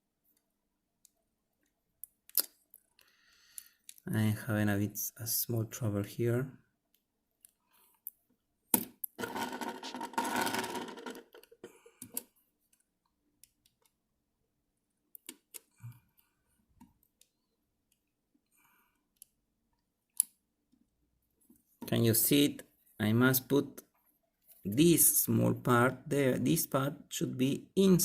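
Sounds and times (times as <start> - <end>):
plastic scraping and rubbing: 9.2 - 11.7.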